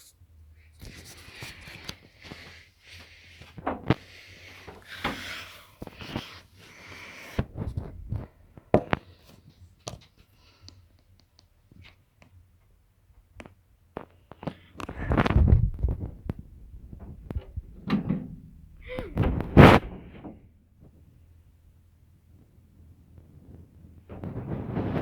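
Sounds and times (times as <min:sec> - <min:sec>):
rustling: 0:14.1 - 0:21.4
sharp knocks and clicks: 0:15.9 - 0:20.5.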